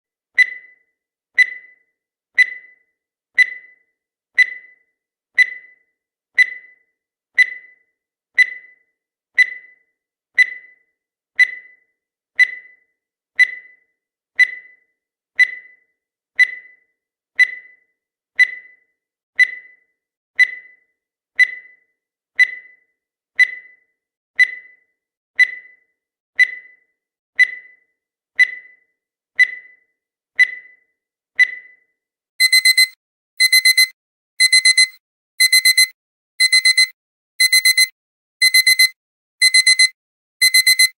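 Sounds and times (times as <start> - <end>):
short high-pitched beeps: 32.4 - 40.9.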